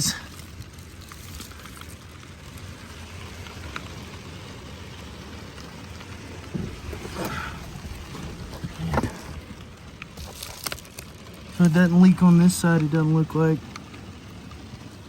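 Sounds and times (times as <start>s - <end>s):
heavy rain on camper roof: 0.0s - 15.0s
low bump: 6.4s - 10.6s.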